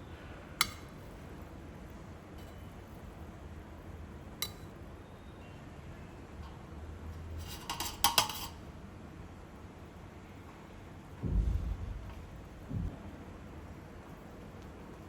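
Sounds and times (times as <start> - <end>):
kitchen utensils and dishes clinking: 7.3 - 8.6.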